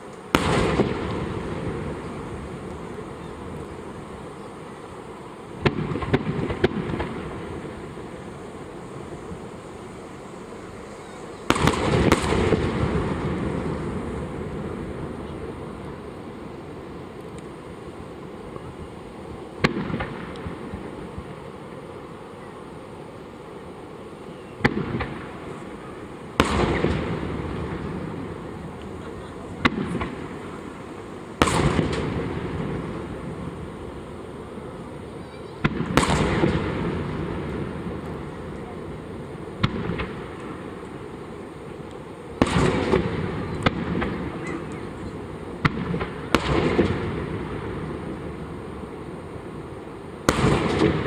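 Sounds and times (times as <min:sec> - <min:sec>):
firework shells bursting: 0:00.0 - 0:21.8, 0:24.6 - 0:51.0
long rolling echo: 0:00.0 - 0:51.0
crackling rumble: 0:24.6 - 0:51.0.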